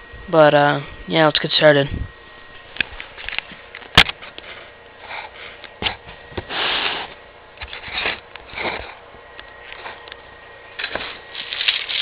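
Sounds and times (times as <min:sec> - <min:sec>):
short rustling hisses: 0:06.5 - 0:07.2.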